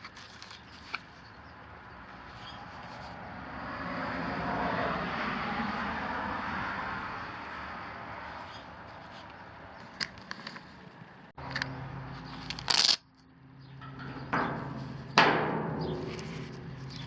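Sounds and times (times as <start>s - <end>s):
hook-and-loop fastener ripping: 0.0s - 1.2s, 12.4s - 13.0s.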